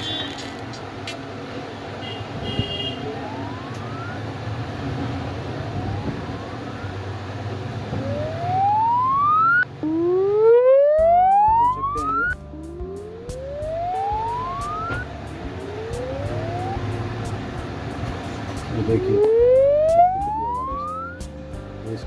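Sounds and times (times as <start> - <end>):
rising test tone sweep: 3.2 - 4.2, 7.9 - 21.4.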